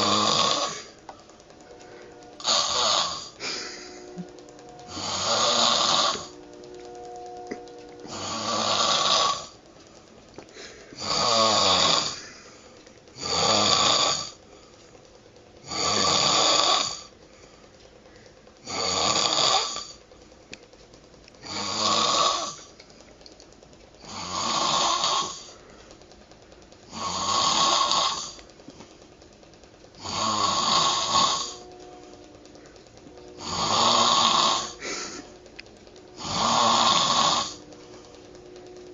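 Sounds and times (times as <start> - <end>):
man snoring heavily: 0.0 - 0.9, 2.4 - 4.2, 5.0 - 6.3, 8.1 - 9.6, 11.0 - 12.2, 13.2 - 14.4, 15.6 - 17.1, 18.6 - 20.0, 21.4 - 22.6, 24.0 - 25.5, 26.9 - 28.4, 30.0 - 31.7, 33.4 - 35.2, 36.2 - 37.6.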